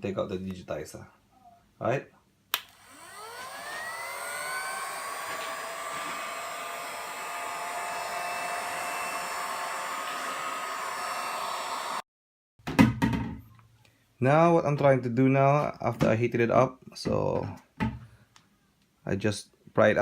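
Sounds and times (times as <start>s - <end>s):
heat gun fan whine: 2.6s - 12.0s.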